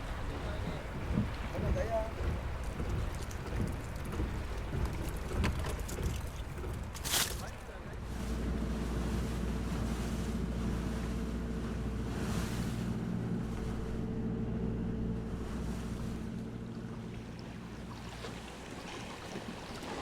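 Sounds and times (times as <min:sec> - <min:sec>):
boat engine running: 0:00.0 - 0:20.0
water splashing: 0:00.0 - 0:20.0.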